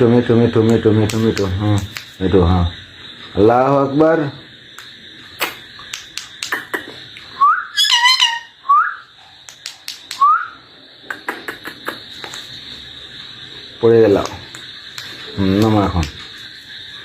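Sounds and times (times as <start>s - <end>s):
parakeet call: 6.5s - 9.1s
parakeet whistling: 7.4s - 9.1s.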